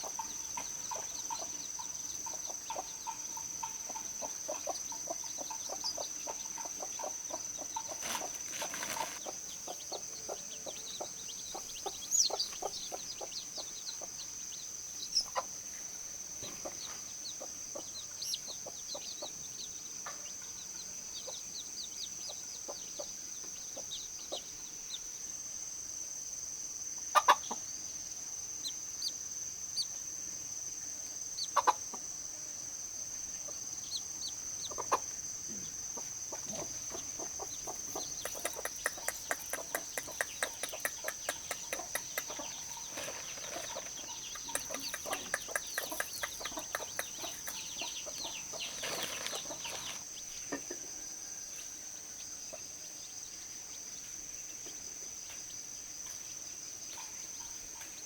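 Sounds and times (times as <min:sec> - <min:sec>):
chickens clucking: 0:00.0 - 0:24.6, 0:27.0 - 0:27.8, 0:31.2 - 0:32.2, 0:32.8 - 0:51.0
high insect drone: 0:00.0 - 0:58.0.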